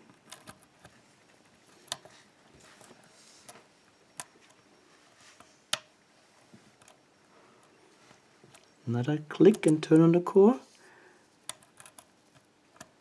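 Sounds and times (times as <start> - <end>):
lock pick clicking and scraping: 0.0 - 4.6, 6.7 - 7.0, 9.4 - 10.2, 11.4 - 13.0.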